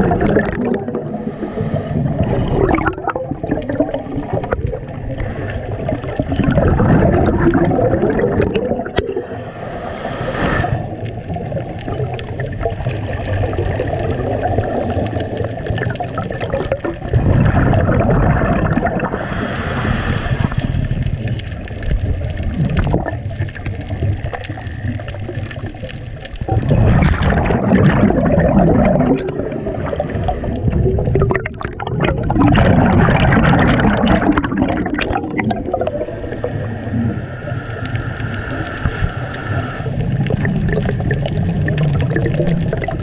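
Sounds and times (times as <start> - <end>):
exhaled bubbles gurgling: 0.0 - 43.0
regulator inhalation hiss: 9.2 - 11.0, 19.2 - 21.2, 36.0 - 40.2.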